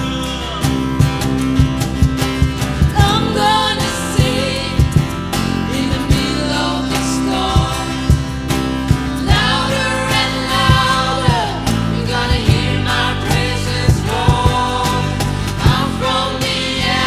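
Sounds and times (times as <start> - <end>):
guitar: 0.0 - 17.0
low drum thumps: 1.0 - 6.6, 7.5 - 17.0
person singing: 3.0 - 8.4.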